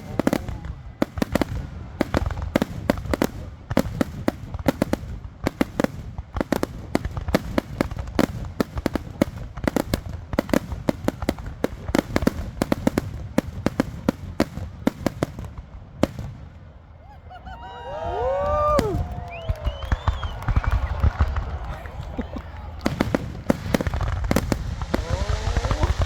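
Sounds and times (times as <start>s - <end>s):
fireworks bangs: 0.0s - 26.0s.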